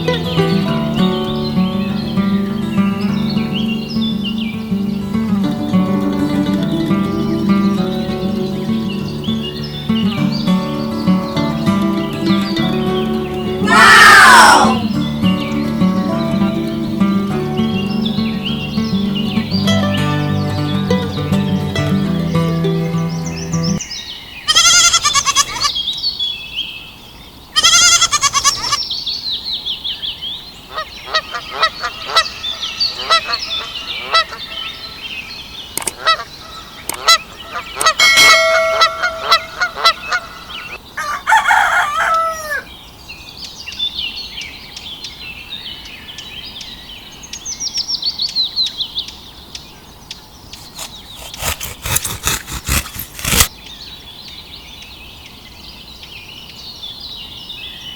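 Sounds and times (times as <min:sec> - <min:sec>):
birds chirping: 0:00.0 - 0:47.6, 0:48.2 - 0:53.9
drawn-out bird calls: 0:30.7 - 0:35.0.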